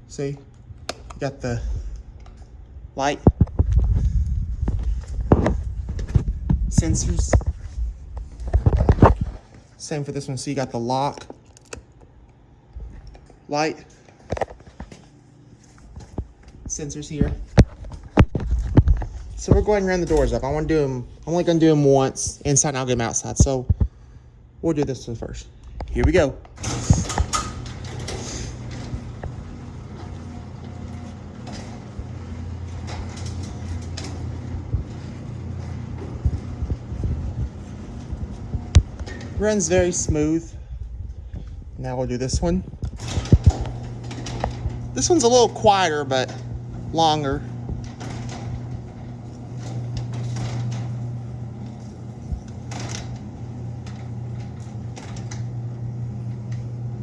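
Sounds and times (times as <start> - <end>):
garage door opener motor hum: 0.0 - 9.8, 11.0 - 57.0
garage door opener click: 26.5 - 39.4, 42.8 - 57.0.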